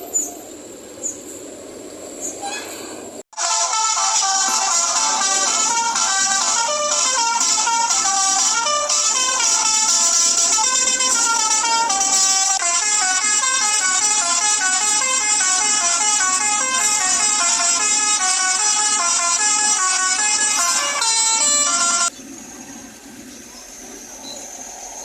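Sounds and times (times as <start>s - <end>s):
multi-tone bus horn melody: 2.4s - 22.1s.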